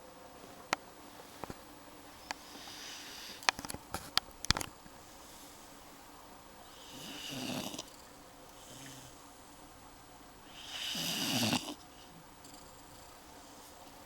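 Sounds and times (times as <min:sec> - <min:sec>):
faint breath: 0:02.2 - 0:03.6, 0:05.0 - 0:06.0
dog snoring: 0:02.3 - 0:03.4, 0:06.6 - 0:09.4, 0:10.4 - 0:12.6.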